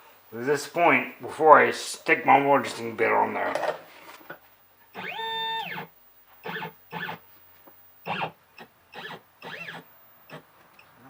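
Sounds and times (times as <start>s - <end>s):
stepper motors whining: 4.8s - 7.3s, 8.0s - 11.0s.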